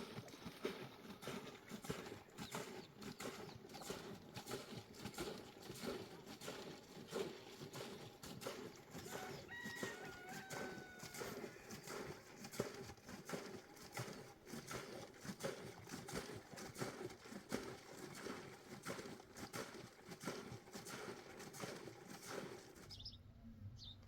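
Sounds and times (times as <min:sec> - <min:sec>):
sheep hooves clicking and knocking: 0:08.4 - 0:14.2
sheep high pitched call: 0:09.2 - 0:11.7.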